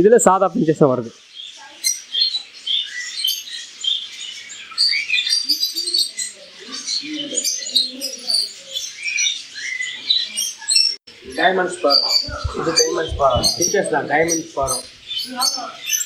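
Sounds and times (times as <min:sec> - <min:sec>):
finches chirping: 0:00.1 - 0:16.0.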